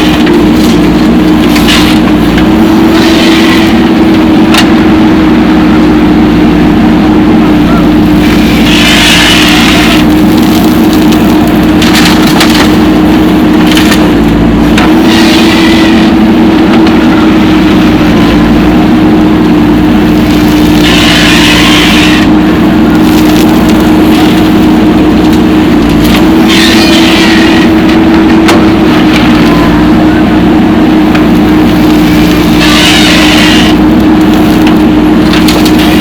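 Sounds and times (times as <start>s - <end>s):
diesel engine running: 0.0s - 36.0s.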